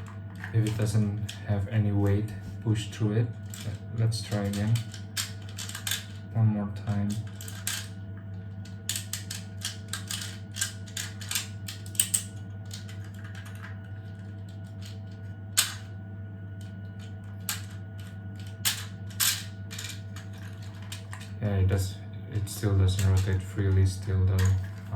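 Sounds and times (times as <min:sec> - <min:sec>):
steady low hum: 0:00.0 - 0:24.9
plastic wind-up toy clicking: 0:04.3 - 0:06.1, 0:08.9 - 0:13.7, 0:17.5 - 0:21.3.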